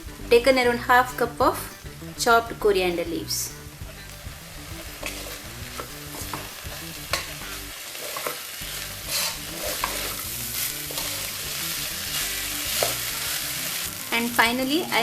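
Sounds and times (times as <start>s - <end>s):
light sizzle: 0.0s - 15.0s.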